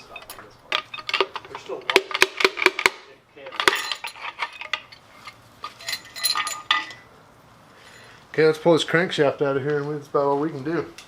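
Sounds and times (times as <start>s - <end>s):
metal parts clinking: 0.0s - 7.1s.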